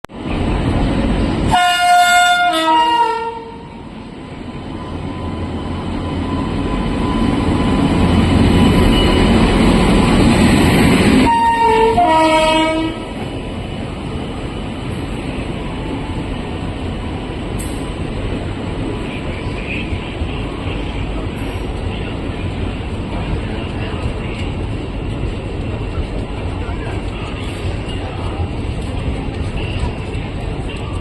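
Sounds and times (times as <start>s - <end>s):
train running rumble: 0.1s - 31.0s
train horn blasts: 1.5s - 3.8s, 11.2s - 13.2s.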